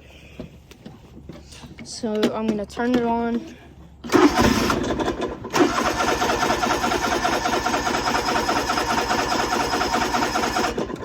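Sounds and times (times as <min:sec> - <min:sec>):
electric starter cranking engine: 0:04.0 - 0:11.0.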